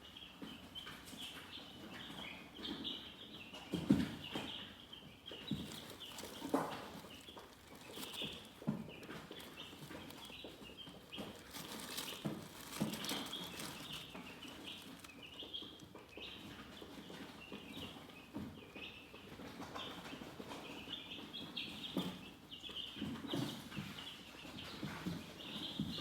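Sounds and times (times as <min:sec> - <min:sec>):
chicks peeping: 0:00.0 - 0:26.0
soft knocks: 0:05.5 - 0:15.1.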